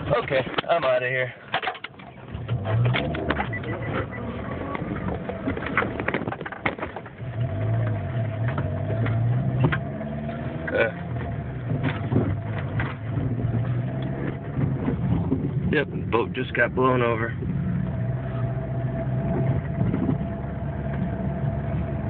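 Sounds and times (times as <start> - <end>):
clicks and knocks: 1.5 - 7.2
car engine driving off: 1.8 - 22.0.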